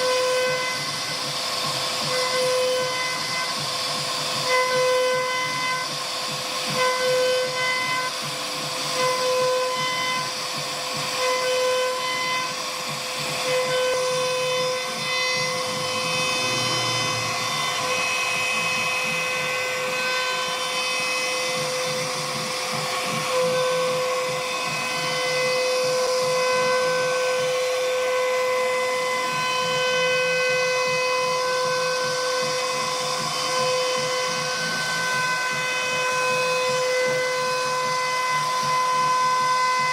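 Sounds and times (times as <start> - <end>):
hiss of cutting wood: 0.0 - 39.9
router spindle whining: 0.0 - 39.9.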